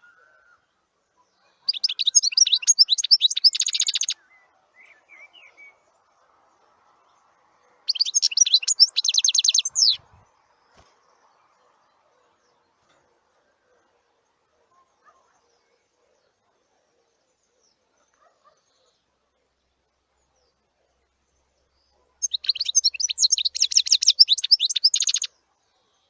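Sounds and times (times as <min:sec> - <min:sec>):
soft bird chirps: 0:00.0 - 0:06.2, 0:06.9 - 0:26.0
songbird singing with trill: 0:00.0 - 0:06.2, 0:07.0 - 0:10.2, 0:20.2 - 0:25.5.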